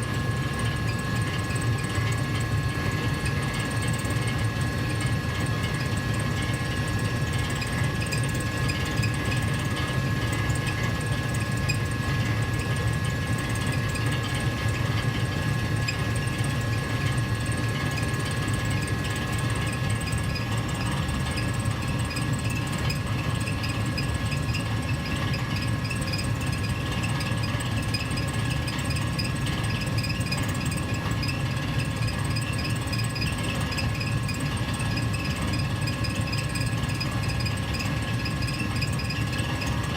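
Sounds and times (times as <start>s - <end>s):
thin steady whine: 0.0s - 39.9s.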